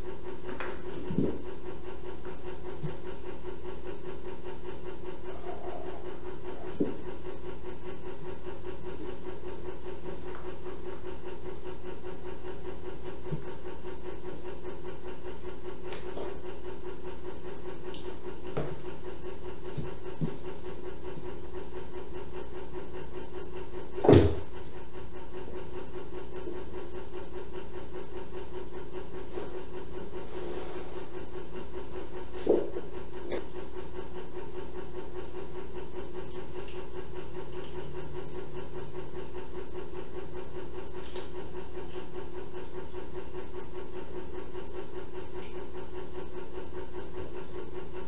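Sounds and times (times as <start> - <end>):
mechanical hum: 0.0 - 48.0
loud short thump: 24.0 - 24.5.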